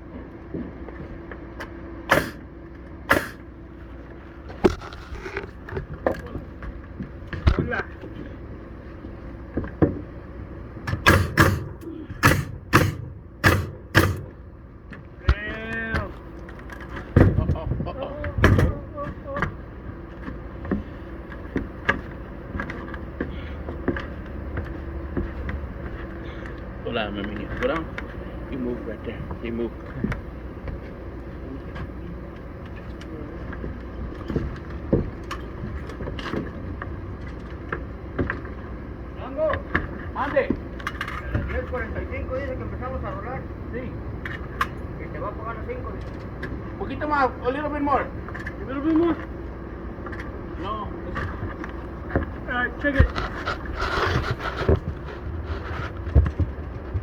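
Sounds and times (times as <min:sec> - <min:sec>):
hammer striking nails into wood: 0:02.1 - 0:02.4, 0:03.1 - 0:03.4, 0:10.9 - 0:14.4
knocks: 0:10.9 - 0:14.4.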